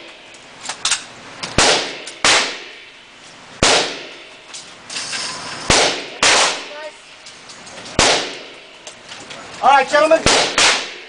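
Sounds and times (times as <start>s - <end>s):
gunshots with echoing tail: 1.6s - 2.9s, 3.6s - 4.3s, 5.7s - 6.7s, 8.0s - 8.8s, 10.2s - 11.0s.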